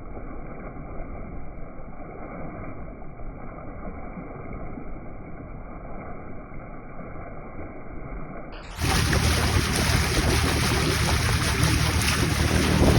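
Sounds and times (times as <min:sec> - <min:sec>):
water rushing along hull: 0:00.0 - 0:12.9
wind on microphone: 0:08.7 - 0:12.9.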